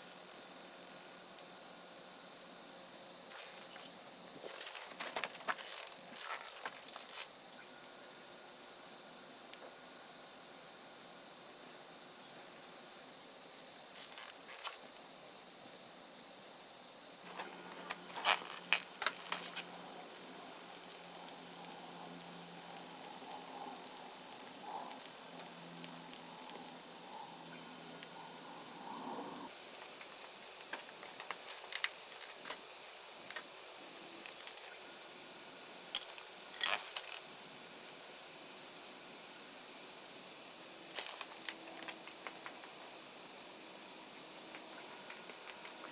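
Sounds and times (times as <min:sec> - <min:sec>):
wood fire crackling and popping: 0:03.2 - 0:10.0, 0:13.8 - 0:15.9, 0:16.5 - 0:38.0, 0:40.4 - 0:43.6, 0:44.2 - 0:45.9
steady low hum: 0:16.2 - 0:40.1.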